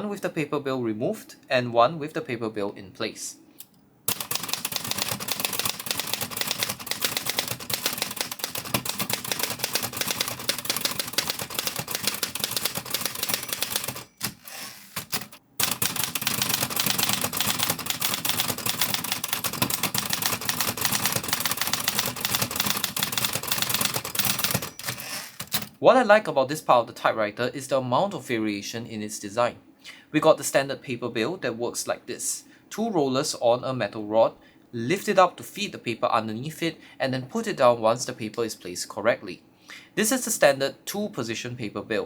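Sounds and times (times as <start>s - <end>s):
manual typewriter typing: 4.1s - 25.8s.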